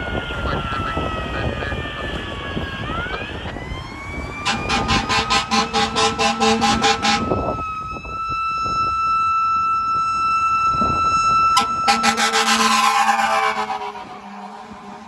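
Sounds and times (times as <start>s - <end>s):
ambulance siren wailing: 0.0s - 15.0s
air horn pulses: 4.5s - 7.4s, 11.6s - 15.0s.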